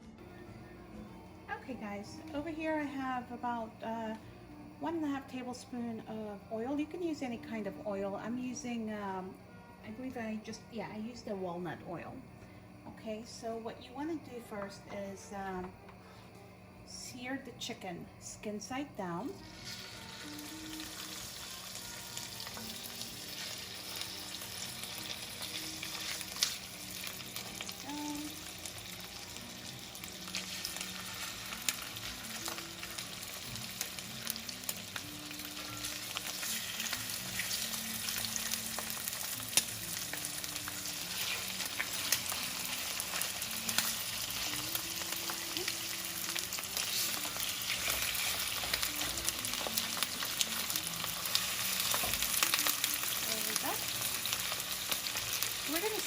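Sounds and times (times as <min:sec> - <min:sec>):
chicken sizzling in oil: 0:18.7 - 0:56.0.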